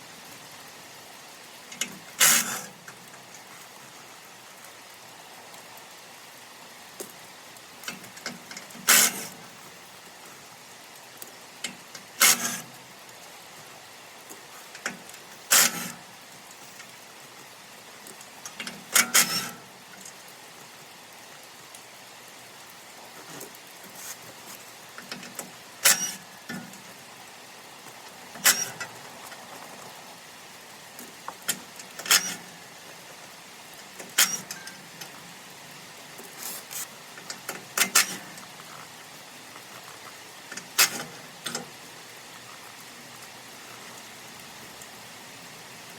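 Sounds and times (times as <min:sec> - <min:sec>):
steady hiss: 0:00.0 - 0:45.9.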